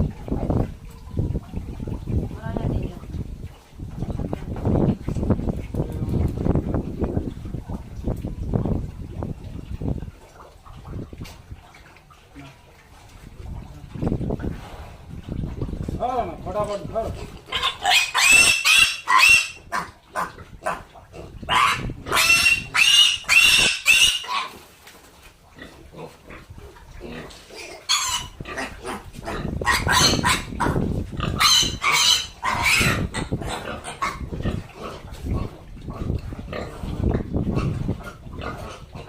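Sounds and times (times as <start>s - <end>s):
pig squealing: 17.5s - 24.6s, 27.1s - 35.0s.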